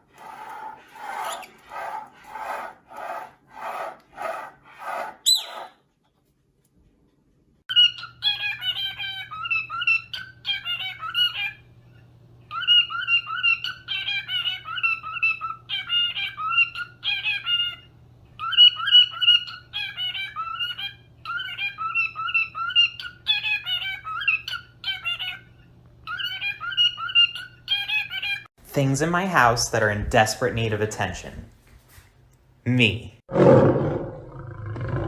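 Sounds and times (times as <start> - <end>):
parrot chirping and chattering: 0.1 - 5.9, 7.7 - 11.7, 12.5 - 28.5.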